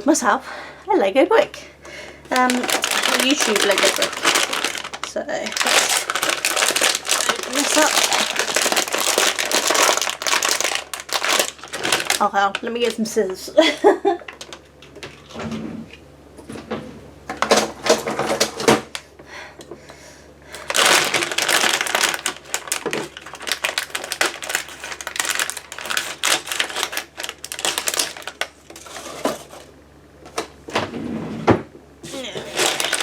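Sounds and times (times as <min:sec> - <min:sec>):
packaging being opened: 0:02.3 - 0:13.0, 0:20.6 - 0:29.6, 0:32.4 - 0:33.0.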